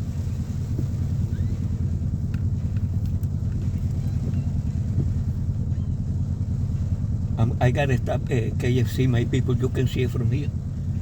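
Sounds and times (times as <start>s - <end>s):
car engine and tyre rumble: 0.0s - 11.0s
faint ticks: 2.2s - 5.2s.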